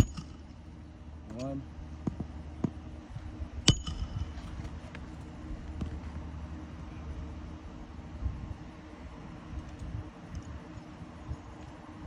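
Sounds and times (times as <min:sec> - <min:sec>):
wind buffeting microphone: 0:07.1 - 0:12.0.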